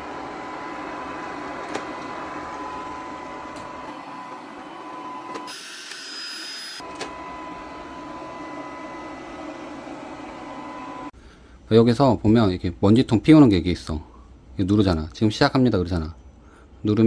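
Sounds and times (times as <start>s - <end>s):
robot vacuum whirring: 0.0s - 11.1s.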